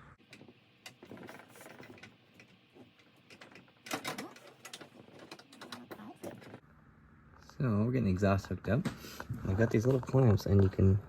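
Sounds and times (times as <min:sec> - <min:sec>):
hardware clicking and rattling: 0:00.3 - 0:06.6.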